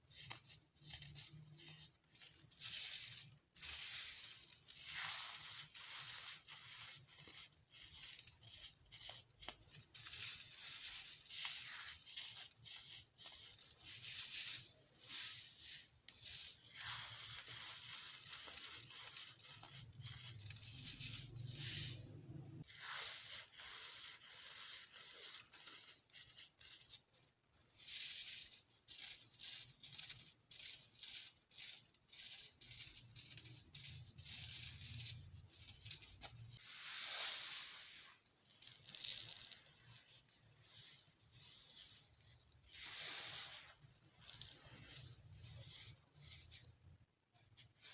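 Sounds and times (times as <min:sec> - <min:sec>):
baking soda crunching: 0:03.1 - 0:25.6.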